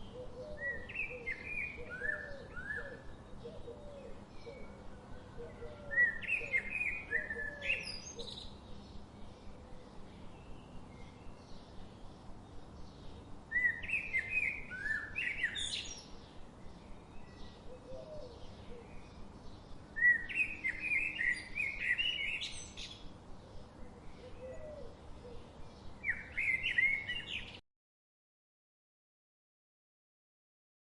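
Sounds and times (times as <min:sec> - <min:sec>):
faint bird calls: 0:00.0 - 0:08.6, 0:17.3 - 0:19.2, 0:20.0 - 0:27.6
bird singing: 0:00.0 - 0:27.6
steady background hiss: 0:00.0 - 0:27.6.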